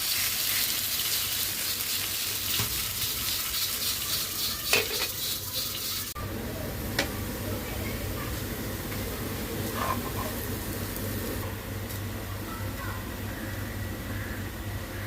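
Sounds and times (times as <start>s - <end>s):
potatoes sizzling in hot oil: 0.0s - 11.4s.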